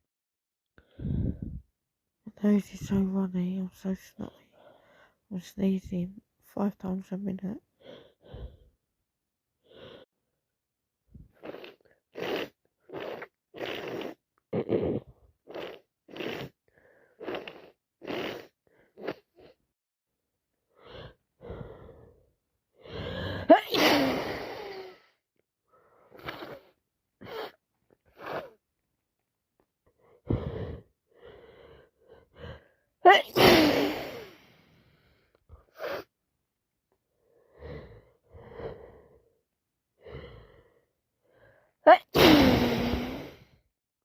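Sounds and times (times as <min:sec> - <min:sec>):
woman taking short breaths: 0:04.5 - 0:05.2
woman sneezing: 0:23.5 - 0:24.9, 0:33.1 - 0:34.4, 0:41.9 - 0:43.4.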